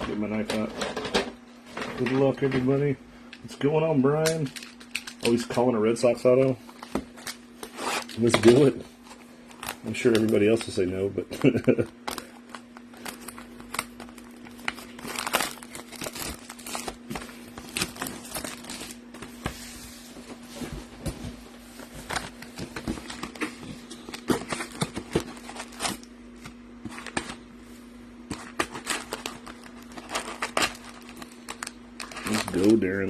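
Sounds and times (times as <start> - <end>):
steady low hum: 0.0 - 33.0
plastic packaging crinkling and tearing: 4.1 - 5.6, 6.6 - 19.4, 21.9 - 26.1, 28.3 - 33.0.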